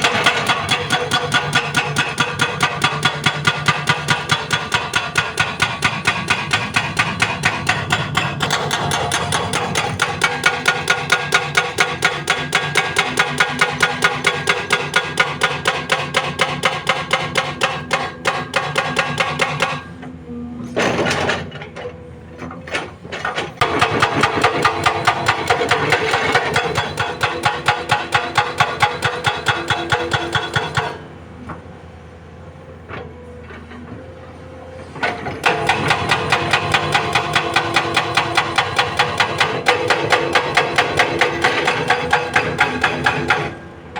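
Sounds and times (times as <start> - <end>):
hydraulic breaker hammering rock: 0.0 - 31.6, 34.9 - 43.9.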